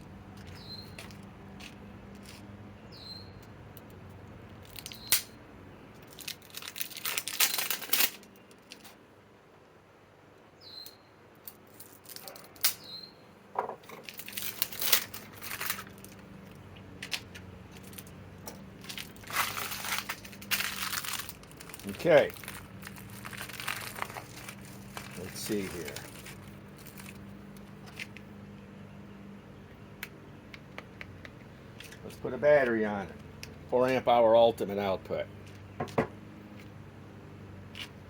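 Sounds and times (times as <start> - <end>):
packaging wrap tearing and crumpling: 6.1 - 7.9, 14.1 - 16.2, 18.8 - 27.3.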